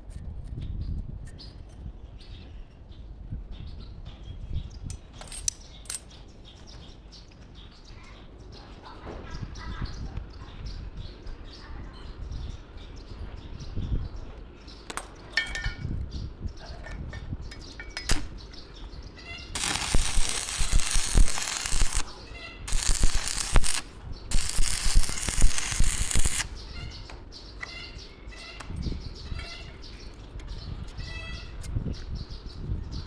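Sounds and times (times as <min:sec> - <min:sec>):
small birds chirping: 0:00.5 - 0:33.0
loud hissing bursts: 0:19.6 - 0:26.6.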